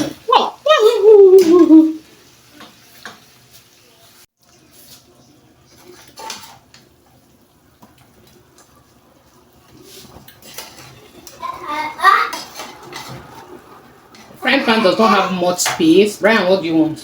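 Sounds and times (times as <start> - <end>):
spoon scraping frying pan: 5.7 - 7.2, 9.6 - 16.6.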